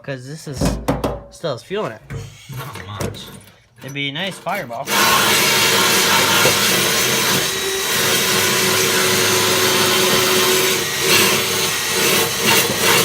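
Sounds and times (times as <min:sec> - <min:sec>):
wire wheel scraping metal: 0:02.2 - 0:13.0
power drill motor whine: 0:04.8 - 0:13.0.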